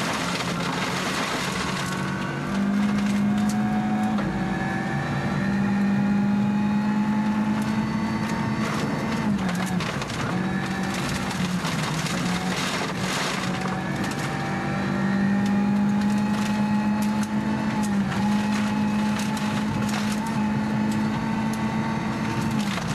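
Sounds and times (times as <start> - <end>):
car engine at high revs: 0.0 - 22.9
gravel rattling against underbody: 8.6 - 14.4.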